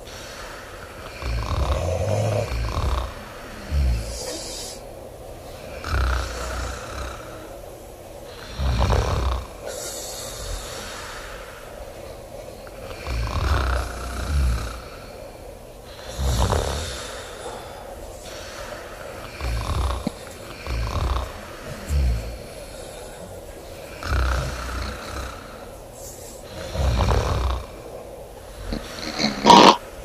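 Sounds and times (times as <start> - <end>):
woman snoring loudly: 0.2 - 4.8, 5.6 - 7.6, 8.3 - 11.1, 12.8 - 15.2, 16.0 - 17.4, 19.2 - 23.0, 23.9 - 25.7, 26.5 - 27.8, 28.6 - 29.9.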